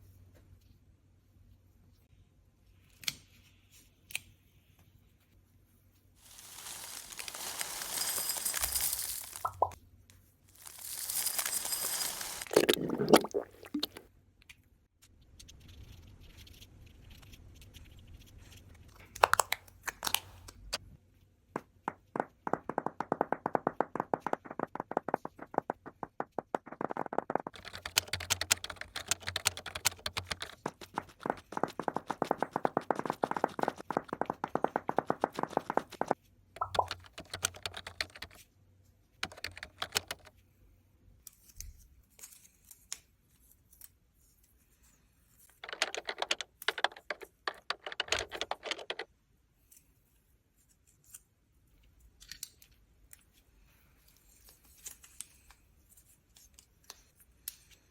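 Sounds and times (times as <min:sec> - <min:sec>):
swishing rustle: 0:06.2 - 0:09.4
fast dry clicking: 0:23.0 - 0:38.4, 0:39.2 - 0:40.3.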